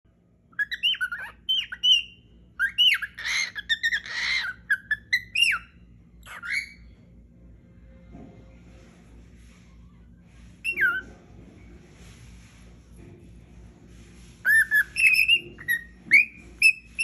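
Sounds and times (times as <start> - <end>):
cockatiel chirps and whistles: 0.6 - 6.8, 10.6 - 11.1, 14.4 - 17.0
cockatiel squawks: 2.6 - 6.8.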